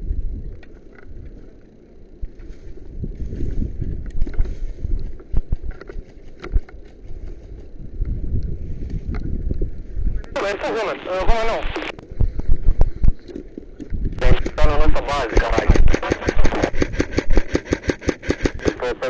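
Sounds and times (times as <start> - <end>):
wind rumble: 0.0 - 10.4, 11.3 - 18.8
microphone handling noise: 2.3 - 17.5.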